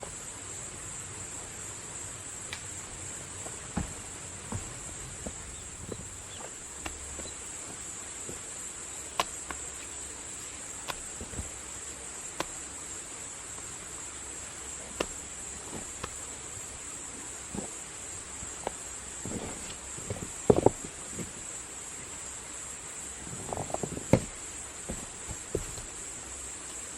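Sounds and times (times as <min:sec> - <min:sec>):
insect chorus chirring: 0:00.0 - 0:26.9.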